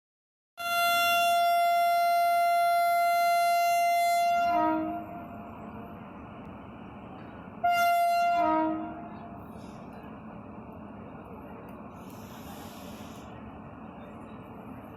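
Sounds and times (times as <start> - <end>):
twin-tone locomotive horn: 0.6 - 5.5, 7.6 - 9.4.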